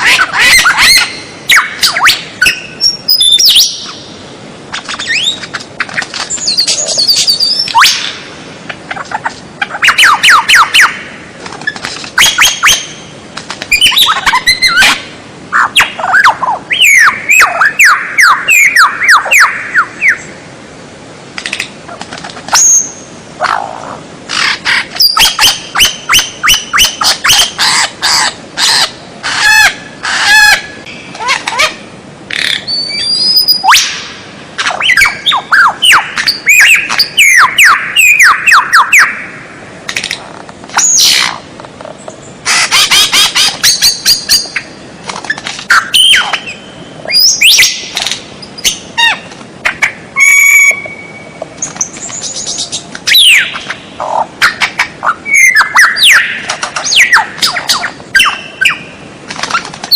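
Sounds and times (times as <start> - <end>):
bird singing whistled song: 0.4 - 4.0, 4.9 - 5.4, 6.3 - 8.1, 13.7 - 15.0, 15.7 - 20.3, 25.0 - 27.5, 32.4 - 34.0, 34.8 - 39.2, 45.7 - 47.9, 50.2 - 53.6, 55.2 - 58.9.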